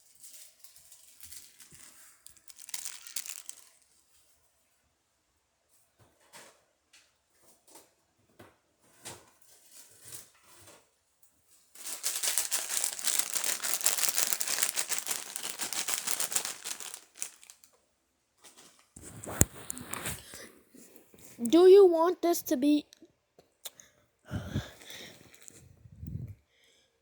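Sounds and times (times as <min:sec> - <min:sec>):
crinkling and rustling: 0:00.0 - 0:04.0, 0:11.7 - 0:17.8, 0:18.4 - 0:21.6
loud dense crackling: 0:11.9 - 0:17.5.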